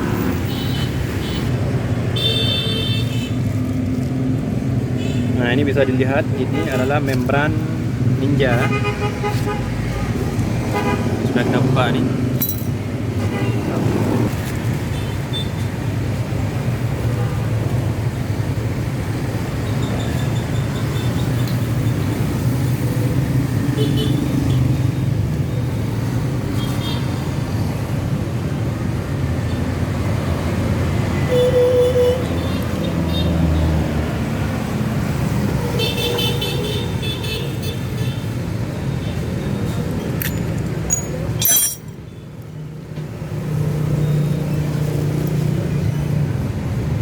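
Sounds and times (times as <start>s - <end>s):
road traffic rumble: 0.0s - 47.0s.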